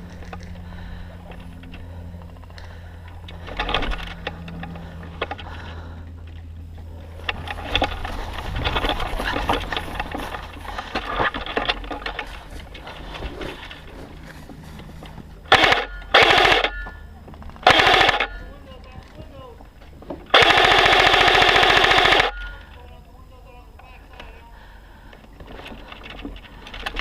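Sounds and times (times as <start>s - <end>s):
scuffing and rustling movement: 6.8s - 15.5s
airsoft gun full-auto bursts: 15.5s - 16.8s, 17.6s - 18.5s, 20.3s - 22.6s.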